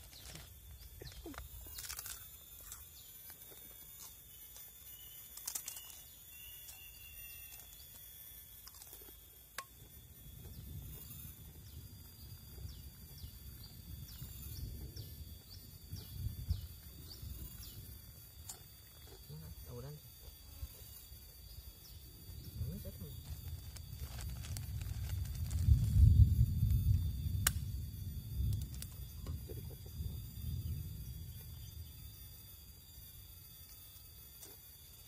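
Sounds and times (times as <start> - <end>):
low rumble: 22.2 - 32.4.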